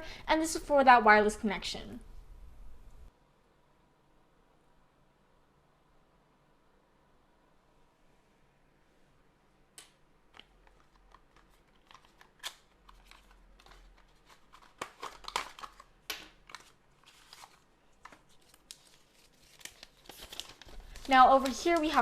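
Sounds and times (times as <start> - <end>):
cardboard and paper rustling: 10.4 - 22.0.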